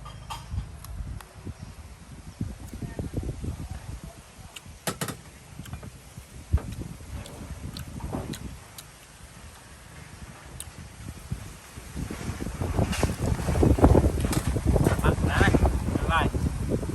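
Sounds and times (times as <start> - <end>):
soft chewing: 5.6 - 15.0.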